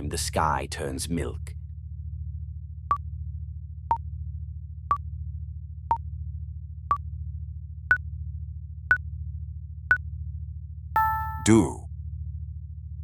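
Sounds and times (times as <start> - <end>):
countdown timer beeps: 11.0 - 11.8.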